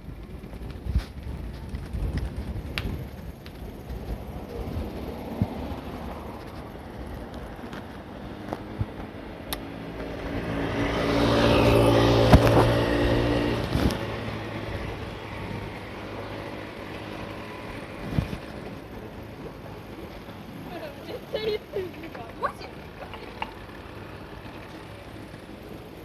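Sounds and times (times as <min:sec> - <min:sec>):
vehicle engine driving past: 0:09.8 - 0:17.8.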